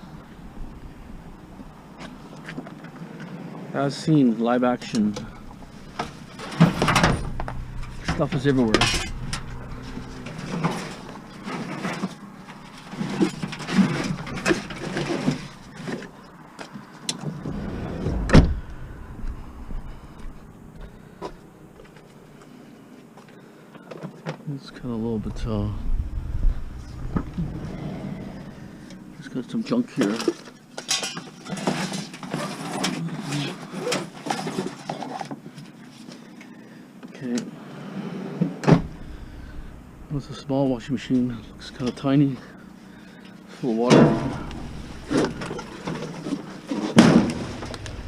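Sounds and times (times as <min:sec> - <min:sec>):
junk knocking and scraping: 0:04.8 - 0:22.2, 0:24.7 - 0:33.0, 0:38.6 - 0:42.8, 0:43.8 - 0:48.0
metal knocking and rattling: 0:05.0 - 0:16.2, 0:43.9 - 0:48.0
heavy thump: 0:05.2 - 0:11.6, 0:17.4 - 0:21.9, 0:24.8 - 0:29.0, 0:38.6 - 0:42.0, 0:43.9 - 0:48.0.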